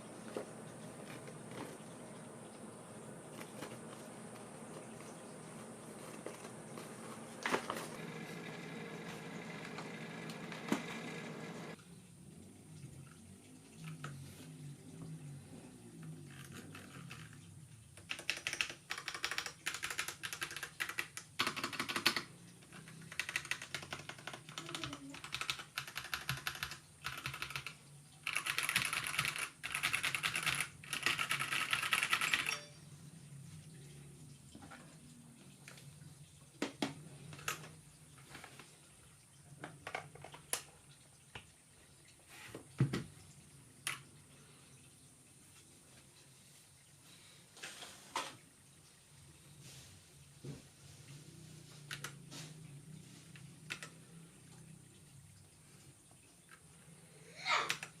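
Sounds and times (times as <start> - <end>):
mechanical keyboard typing: 16.3 - 17.4, 18.0 - 32.8, 53.7 - 53.9.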